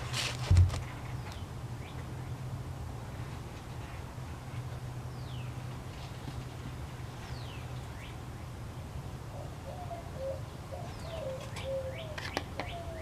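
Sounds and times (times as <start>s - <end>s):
birds whistling calls: 9.3s - 13.0s.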